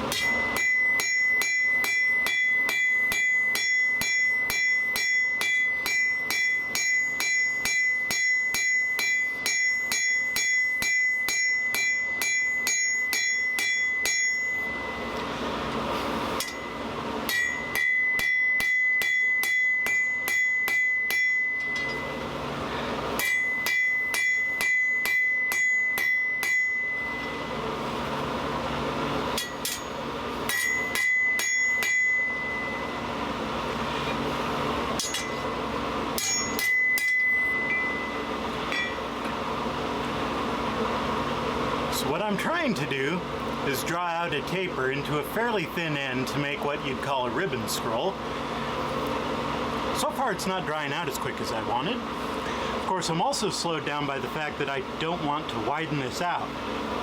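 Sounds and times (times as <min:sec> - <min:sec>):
anvil ringing: 0:00.0 - 0:15.3, 0:16.4 - 0:22.4, 0:23.1 - 0:27.8, 0:29.3 - 0:34.2, 0:34.9 - 0:39.2
hammer blows on hot steel: 0:00.0 - 0:39.4.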